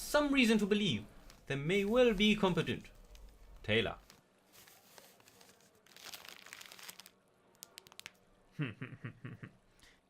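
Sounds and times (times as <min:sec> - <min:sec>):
paper rustling and crinkling: 0:04.0 - 0:07.2
paper crumpling: 0:04.0 - 0:08.2.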